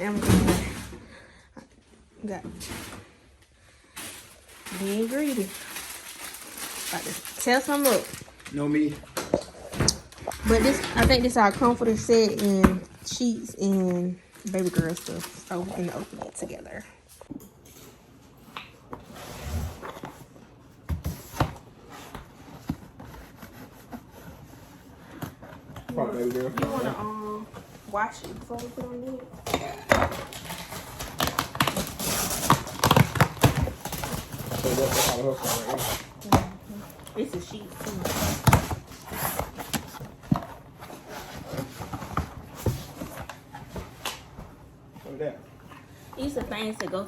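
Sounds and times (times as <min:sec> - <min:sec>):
packages rustling: 0:02.6 - 0:16.8, 0:30.0 - 0:47.0
packaging rustling: 0:03.9 - 0:09.0, 0:13.6 - 0:16.6, 0:30.1 - 0:36.2.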